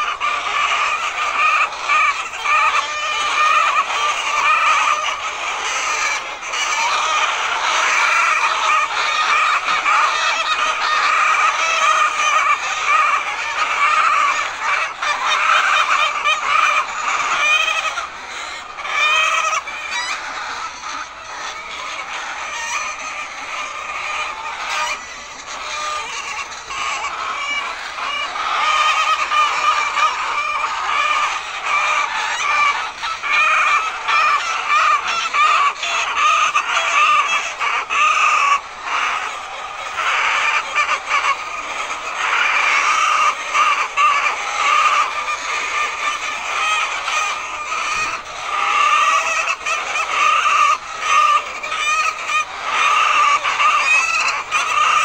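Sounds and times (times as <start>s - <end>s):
hens clucking: 0.0s - 55.0s.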